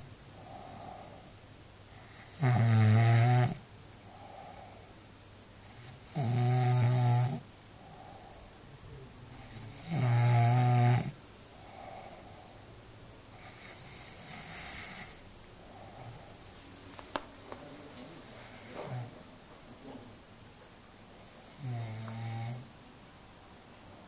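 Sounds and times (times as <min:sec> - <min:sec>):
soft breathing: 0:00.3 - 0:02.1, 0:04.0 - 0:05.0, 0:07.7 - 0:09.7, 0:11.5 - 0:20.1
person snoring: 0:02.2 - 0:04.8, 0:05.8 - 0:08.4, 0:09.4 - 0:12.6, 0:21.2 - 0:22.7.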